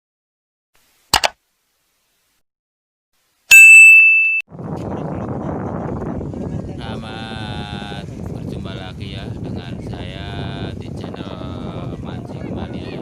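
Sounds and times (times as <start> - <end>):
bright bell-like ding: 3.5 - 4.4
wind on microphone: 4.5 - 13.0.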